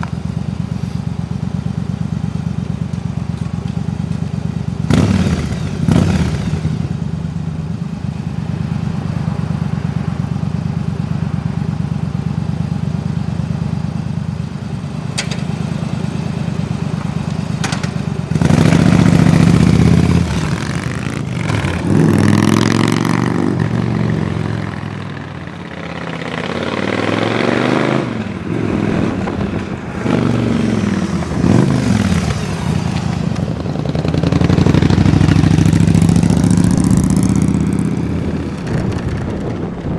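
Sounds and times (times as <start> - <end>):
motorcycle engine idling and revving: 0.0 - 39.9.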